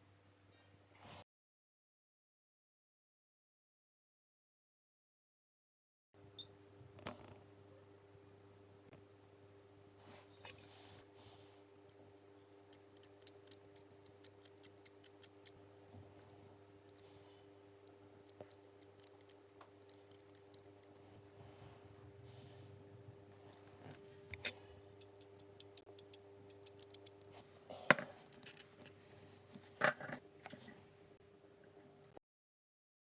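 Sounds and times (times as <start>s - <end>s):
small tool clicks and snips: 11.7s - 15.5s, 17.8s - 21.0s, 24.4s - 27.3s.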